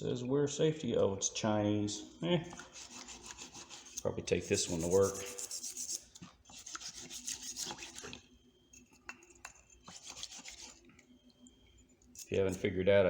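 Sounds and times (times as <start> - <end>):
rasping scrubbing of metal tool: 2.6 - 8.2, 9.3 - 10.8, 12.1 - 12.7.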